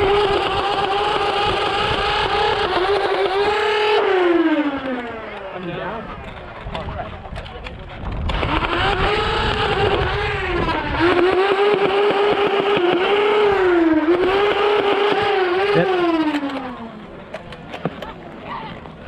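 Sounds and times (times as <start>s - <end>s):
toy blaster balls firing clatter: 7.3s - 13.4s, 14.1s - 18.2s
flywheel motors whining: 8.3s - 18.1s.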